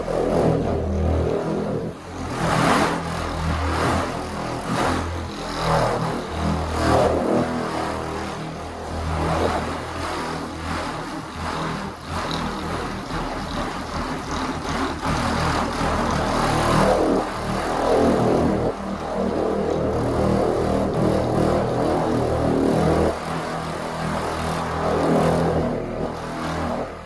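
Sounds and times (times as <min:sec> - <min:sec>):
electric rotary buffer running: 0:08.6 - 0:26.8.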